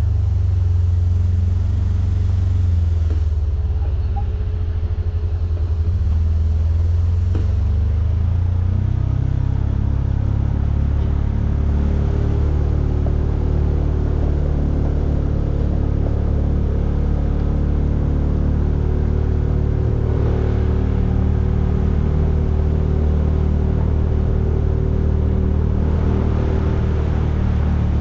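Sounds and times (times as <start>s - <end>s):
vehicle engine and road drone: 0.0s - 28.0s.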